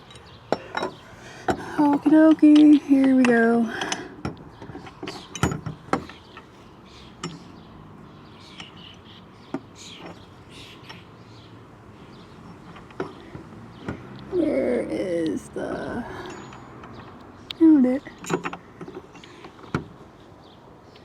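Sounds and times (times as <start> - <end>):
metal hardware clicking and knocking: 0.0 - 6.5, 7.2 - 7.5, 8.5 - 11.1, 12.4 - 14.2, 16.2 - 20.0.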